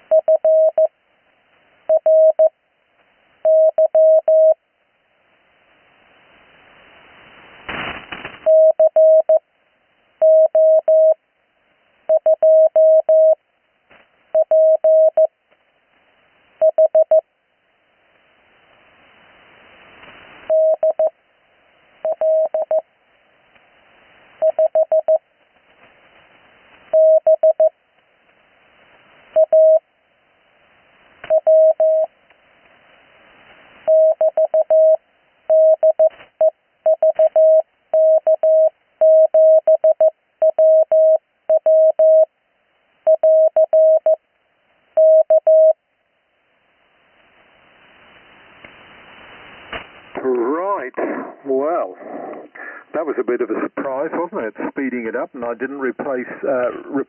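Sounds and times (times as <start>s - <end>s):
radio band noise hiss: 5.6s - 8.5s, 18.1s - 22.1s, 47.2s - 57.0s
static crash: 7.3s - 8.5s, 47.9s - 57.0s
morse code tone: 12.1s - 13.4s, 14.4s - 15.3s, 16.6s - 17.2s, 22.1s - 22.8s, 24.4s - 25.2s, 27.0s - 27.7s, 31.3s - 32.1s, 33.9s - 36.1s, 36.9s - 42.3s, 43.1s - 44.2s, 45.0s - 45.8s.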